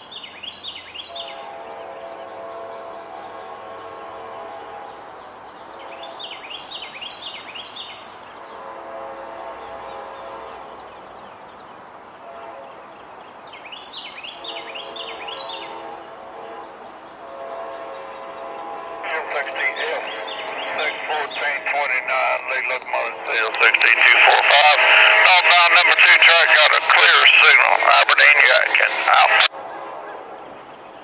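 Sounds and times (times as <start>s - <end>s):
distant locomotive air horn: 1.1s - 5.2s, 8.5s - 11.0s, 14.4s - 21.3s.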